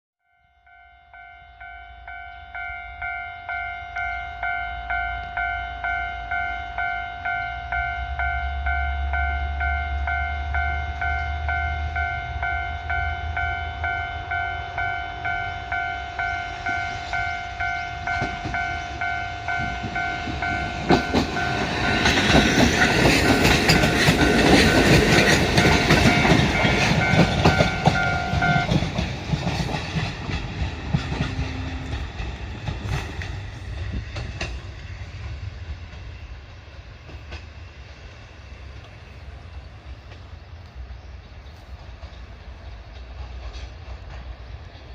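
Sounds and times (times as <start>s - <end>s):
train wheels clattering: 15.2s - 44.9s.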